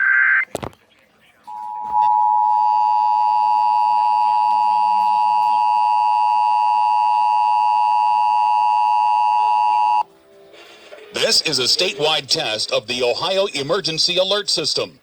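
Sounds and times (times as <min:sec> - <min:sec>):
two-tone alert signal: 0:01.5 - 0:10.0.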